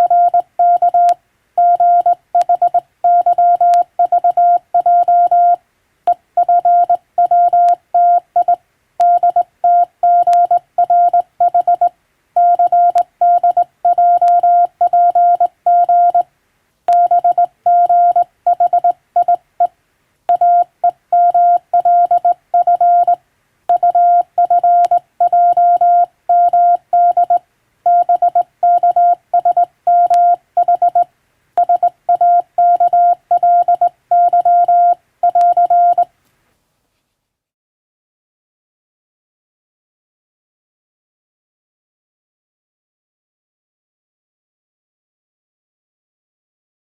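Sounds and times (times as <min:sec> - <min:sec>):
morse code beeping tone: 0:00.0 - 0:05.6, 0:06.4 - 0:16.2, 0:16.9 - 0:19.4, 0:20.3 - 0:31.0, 0:31.6 - 0:36.1.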